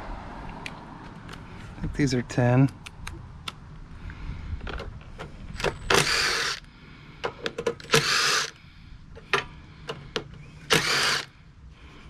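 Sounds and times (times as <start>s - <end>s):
socket ratchet ratcheting: 5.6s - 6.6s, 7.5s - 8.6s, 10.7s - 11.3s.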